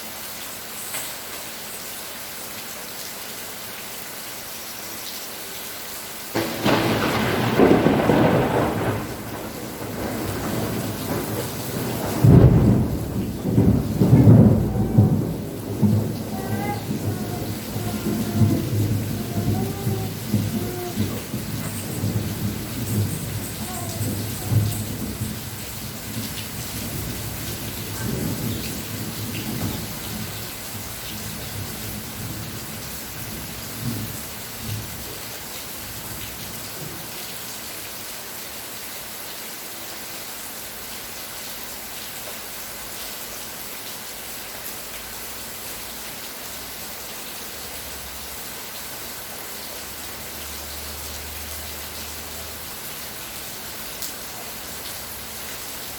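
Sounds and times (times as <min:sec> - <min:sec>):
steady rain hissing: 0:00.0 - 0:55.9
low rumbles of thunder: 0:06.4 - 0:37.2.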